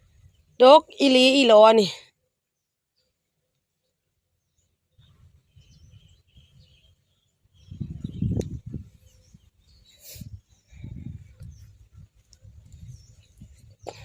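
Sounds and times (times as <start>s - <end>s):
faint bird chirps: 2.1s - 14.0s.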